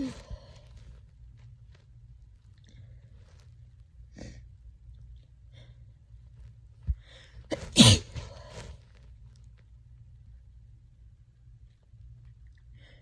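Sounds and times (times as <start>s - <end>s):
loud sneeze: 7.5s - 8.7s.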